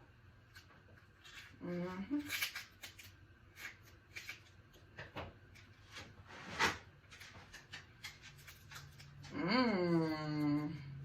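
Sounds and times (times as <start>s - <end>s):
person humming mm: 9.3s - 11.0s.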